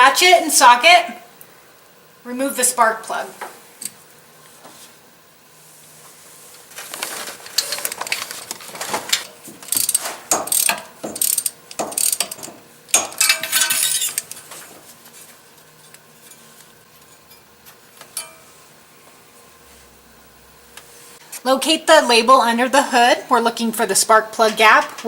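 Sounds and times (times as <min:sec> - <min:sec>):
ratchet wrench clicking: 0:09.7 - 0:12.5.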